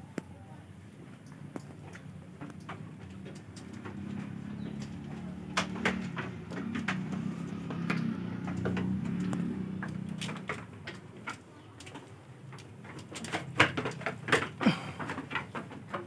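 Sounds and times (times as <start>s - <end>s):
sharp clicks and knocks: 1.1s - 16.0s.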